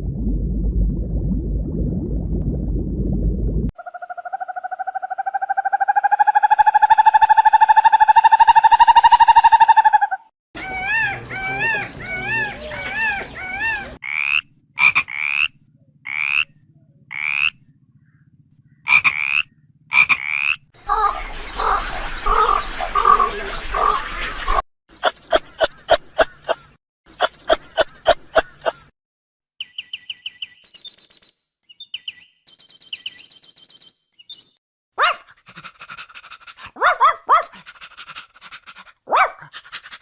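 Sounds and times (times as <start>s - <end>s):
rough noisy animal call: 10.6s - 24.6s.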